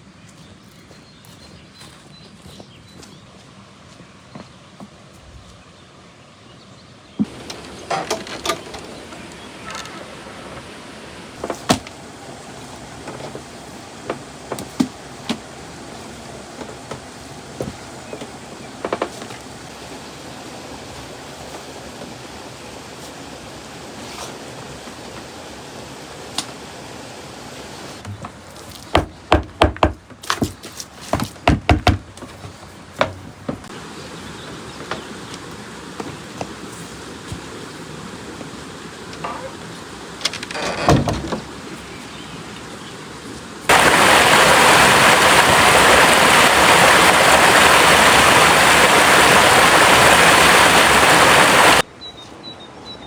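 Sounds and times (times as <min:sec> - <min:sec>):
steady hiss: 0:07.2 - 0:28.0, 0:33.7 - 0:42.1, 0:43.4 - 0:51.9
knocks and taps: 0:31.2 - 0:32.0.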